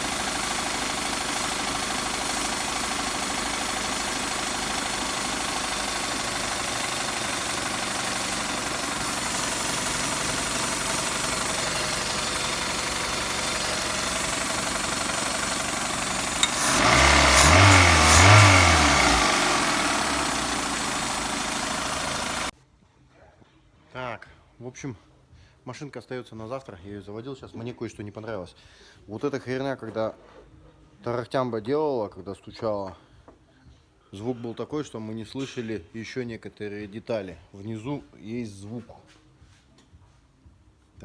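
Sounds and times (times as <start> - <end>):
engine revving: 1.3 - 22.5.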